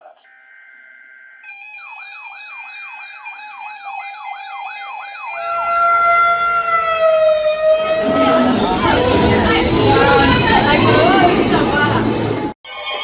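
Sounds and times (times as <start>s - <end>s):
electronic siren yelping: 1.4s - 11.4s.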